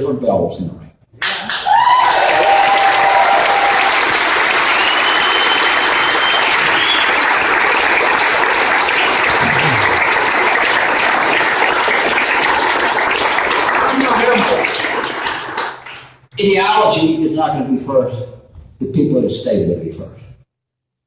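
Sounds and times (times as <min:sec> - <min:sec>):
cheers: 0:01.2 - 0:15.8
audience applause: 0:01.2 - 0:16.2.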